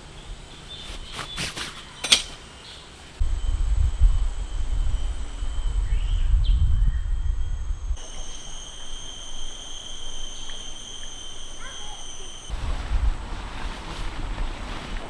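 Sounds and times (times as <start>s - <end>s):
high-pitched insect drone: 2.1s - 12.6s
wind buffeting microphone: 3.2s - 8.0s, 12.5s - 15.0s
bird chirps: 5.6s - 8.8s.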